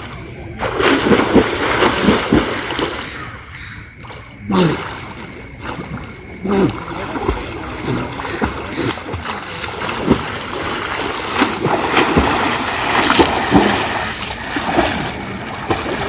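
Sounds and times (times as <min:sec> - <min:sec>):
gurgling splashes: 0:00.0 - 0:16.0
water splashing from swimming: 0:00.0 - 0:16.0.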